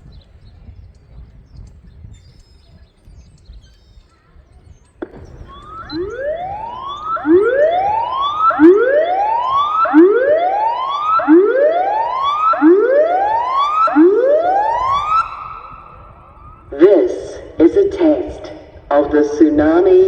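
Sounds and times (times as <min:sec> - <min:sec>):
siren rising whoop tone: 0:05.2 - 0:17.5.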